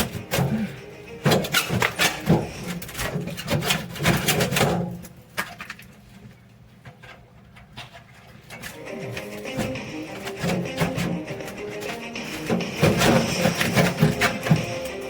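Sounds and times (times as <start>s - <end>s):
knocking and scraping of unit: 1.2s - 5.0s, 7.8s - 15.0s.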